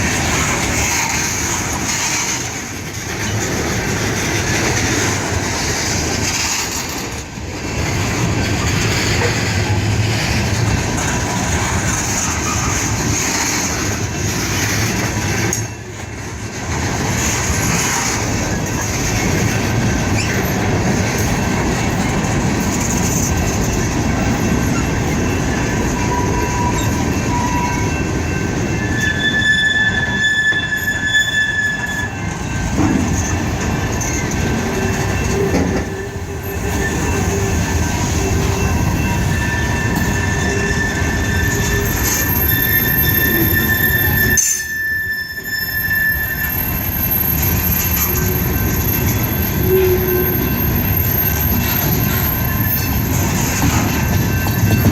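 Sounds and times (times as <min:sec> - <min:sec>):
train wheels rumbling on rail: 0:00.0 - 0:54.9
high-pitched wheel squeals: 0:24.7 - 0:54.9.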